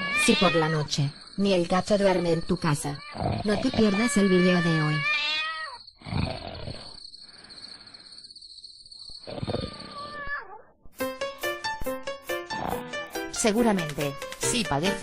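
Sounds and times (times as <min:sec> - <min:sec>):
cat growling and yowling: 0:00.0 - 0:00.9, 0:02.1 - 0:07.0, 0:09.4 - 0:10.8
music with clicking beat: 0:11.0 - 0:15.0.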